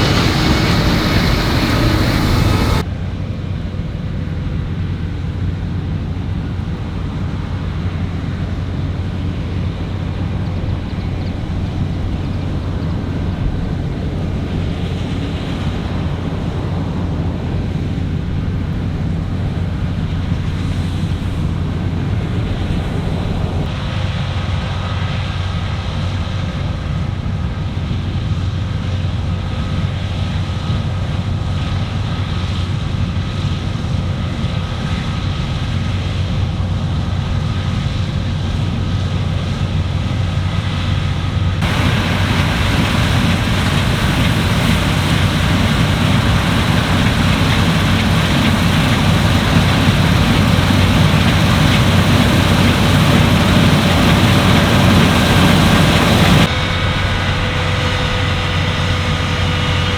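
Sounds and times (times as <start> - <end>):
machinery whirring: 0.0 - 2.8, 41.6 - 57.8
wind-like noise: 0.0 - 3.6, 41.6 - 59.9
combine harvester engine drone: 0.0 - 59.9.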